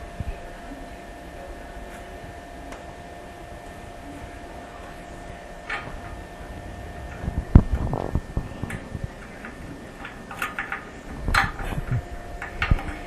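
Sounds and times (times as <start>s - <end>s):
bolts and washers clicking: 9.4s - 11.6s.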